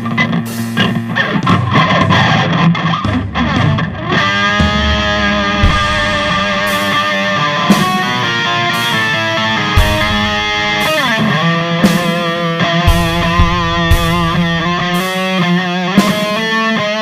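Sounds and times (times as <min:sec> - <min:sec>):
distorted electric guitar: 0:00.0 - 0:17.0.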